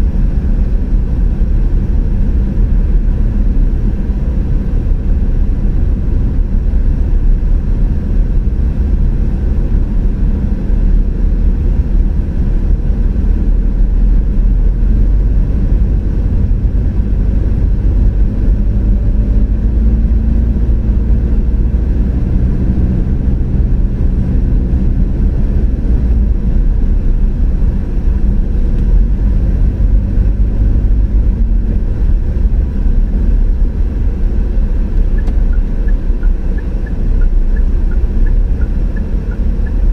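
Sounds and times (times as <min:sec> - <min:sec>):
car tyres and engine rumbling: 0:00.0 - 0:39.9.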